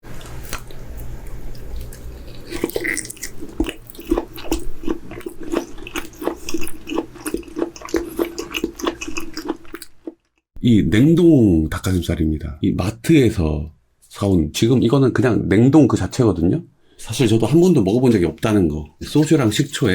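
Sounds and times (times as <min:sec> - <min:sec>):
wet chewing: 0:00.1 - 0:10.5.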